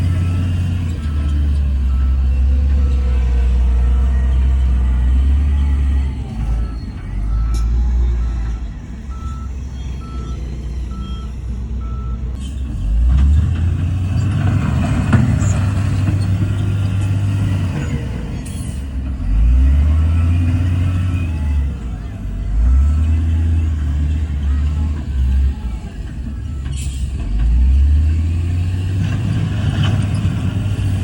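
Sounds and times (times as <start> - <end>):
reversing alarm beeping: 0.0 - 12.6, 19.2 - 28.5
heavy diesel machinery running: 0.0 - 31.0.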